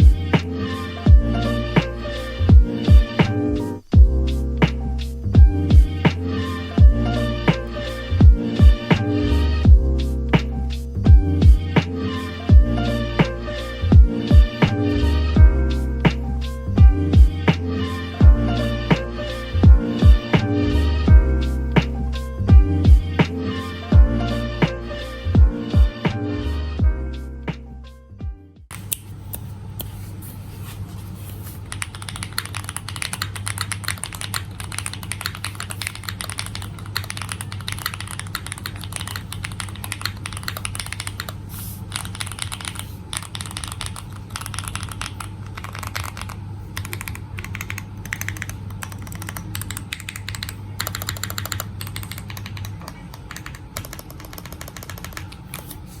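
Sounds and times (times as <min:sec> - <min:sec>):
low hum: 0:00.0 - 0:28.9
mechanical keyboard typing: 0:31.7 - 0:55.7.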